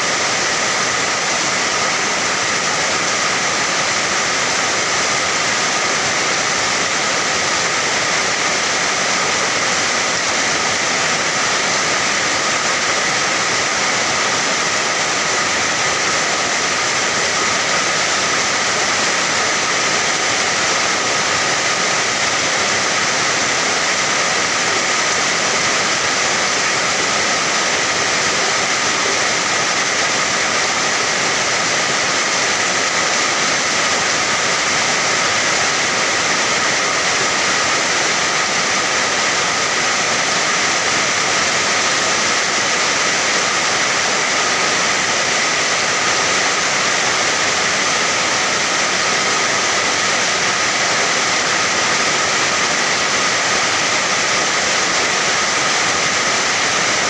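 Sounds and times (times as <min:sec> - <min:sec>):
steady rain: 0:00.0 - 0:57.0.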